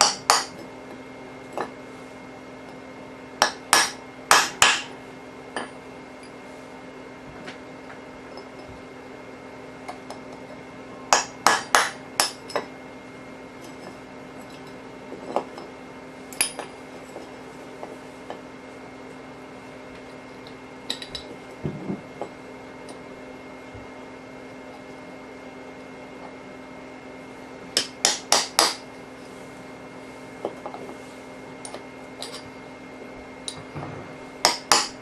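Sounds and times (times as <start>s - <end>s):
hammer striking steel punch: 3.4s - 4.9s, 34.4s - 35.0s.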